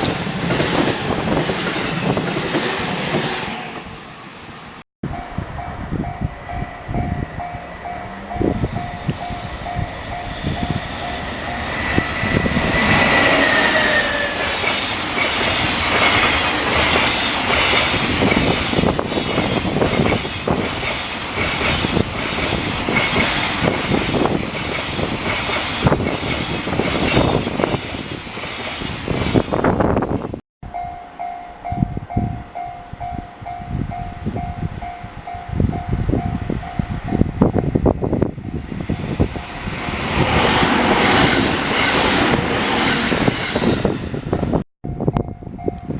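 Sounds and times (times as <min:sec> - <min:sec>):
train wheels clicking over rail joints: 0:10.1 - 0:30.4.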